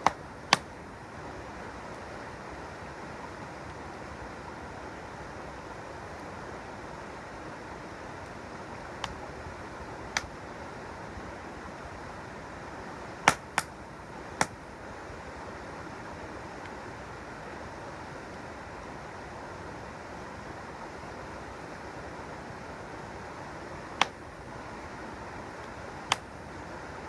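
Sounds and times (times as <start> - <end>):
sharp pops of fire: 0.0 - 0.8, 13.3 - 13.8, 24.0 - 24.3, 26.1 - 26.4
campfire wood crackling: 0.0 - 17.2, 22.6 - 27.0.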